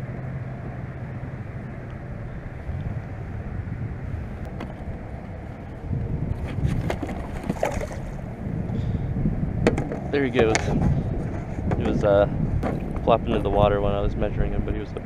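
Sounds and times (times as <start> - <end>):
wind rumbling on microphone: 0.0 - 15.0
fish flopping splash: 6.4 - 8.2
sharp knocks: 9.6 - 10.6, 12.6 - 13.1.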